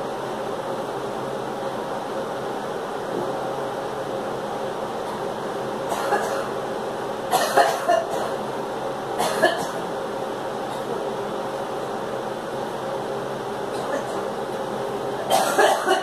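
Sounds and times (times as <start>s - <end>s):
girl coughing: 5.9s - 6.5s, 7.3s - 8.4s, 9.2s - 9.8s, 15.3s - 16.0s.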